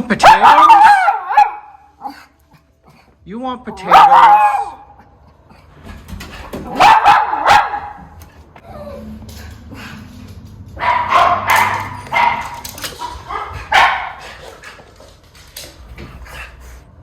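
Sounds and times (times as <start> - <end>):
dog barking: 0.2 - 2.3, 3.8 - 5.1, 6.6 - 8.2, 10.8 - 14.4.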